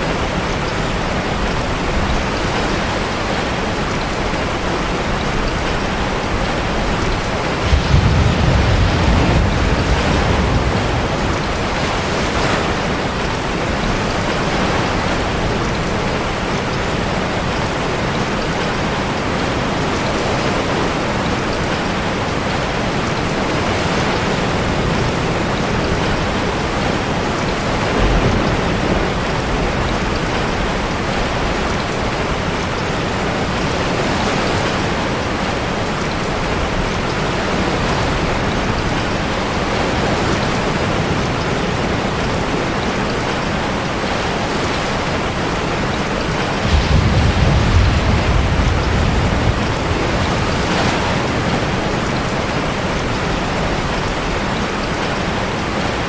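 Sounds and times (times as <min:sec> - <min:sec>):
heavy rain: 0:00.0 - 0:56.0
sea surf: 0:00.0 - 0:56.0
deep low rumble: 0:46.6 - 0:50.6.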